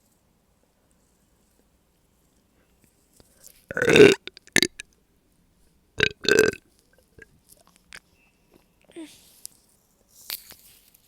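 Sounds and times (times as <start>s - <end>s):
woman burping: 3.7s - 4.8s, 6.0s - 6.6s.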